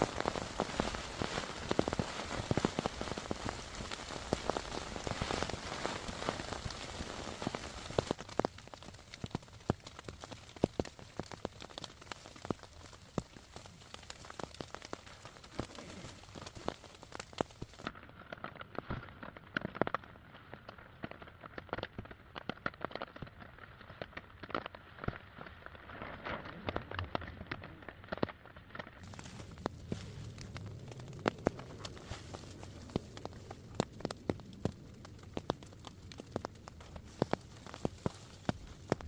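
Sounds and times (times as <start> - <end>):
heavy rain falling: 0.0 - 17.9, 29.0 - 39.0
raindrops striking near microphone: 0.0 - 39.0.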